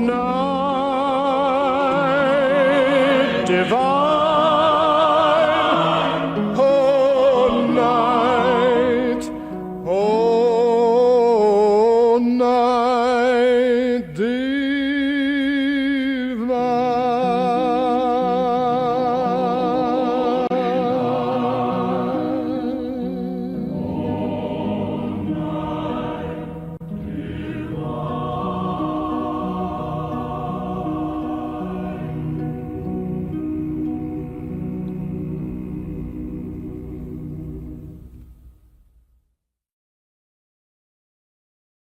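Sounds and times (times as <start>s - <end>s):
instrumental chords: 0.0s - 10.6s, 17.8s - 38.8s
singing with vibrato: 0.0s - 37.3s.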